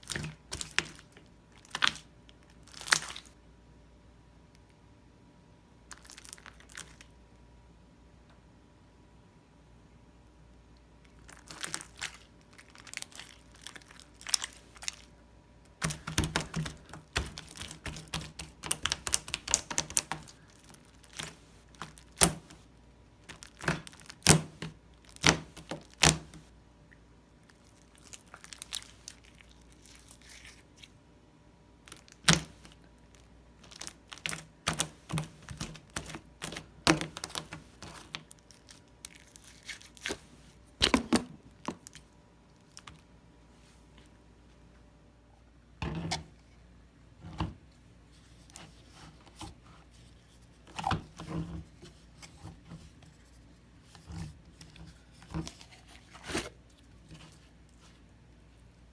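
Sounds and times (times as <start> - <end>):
slime crackling and popping: 0.0 - 3.3, 11.1 - 15.1, 15.7 - 22.6, 23.2 - 26.4, 27.4 - 30.8, 31.9 - 40.2.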